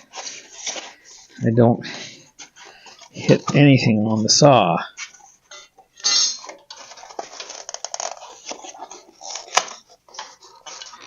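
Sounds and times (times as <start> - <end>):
styrofoam scratching and crunching: 6.8 - 11.0.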